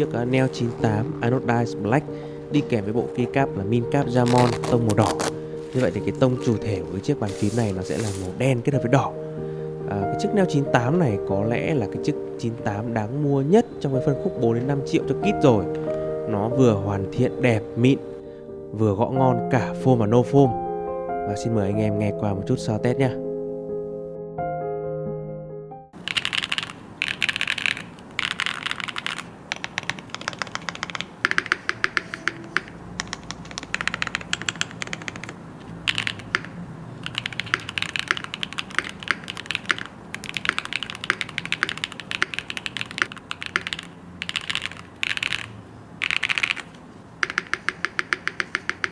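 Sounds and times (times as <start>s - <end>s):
mechanical keyboard typing: 4.1s - 6.6s, 26.0s - 48.9s.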